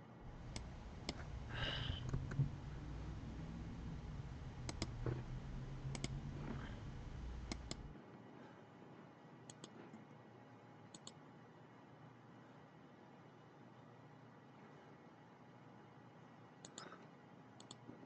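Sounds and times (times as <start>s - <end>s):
low hum: 0.1s - 7.9s
computer mouse double-clicks: 0.3s - 7.9s, 11.0s - 11.2s, 17.6s - 17.8s.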